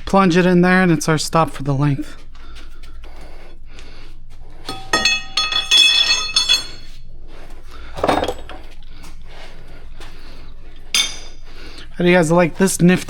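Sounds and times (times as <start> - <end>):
metal tools clinking: 4.6 - 7.0, 7.9 - 8.7, 10.9 - 11.5.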